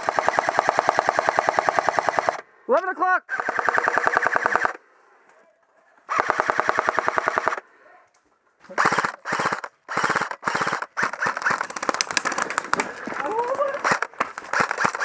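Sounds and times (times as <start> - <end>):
airsoft guns firing bursts: 0.0 - 2.4, 3.3 - 4.8, 6.1 - 7.6, 8.6 - 15.0.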